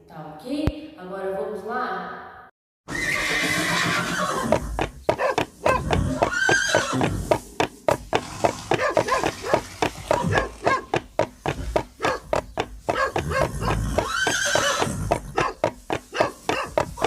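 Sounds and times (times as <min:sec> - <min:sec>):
horse whinny: 0:02.9 - 0:04.8, 0:05.6 - 0:07.4, 0:08.1 - 0:10.9, 0:13.0 - 0:15.5
horse hooves clip-clopping: 0:04.0 - 0:17.0.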